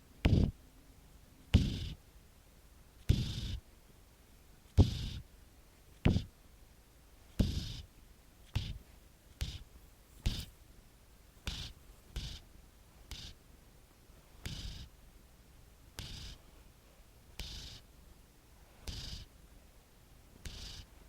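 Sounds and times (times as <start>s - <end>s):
cat snoring: 3.2s - 3.6s, 14.5s - 14.9s, 16.0s - 16.4s, 18.9s - 19.3s, 20.5s - 20.8s.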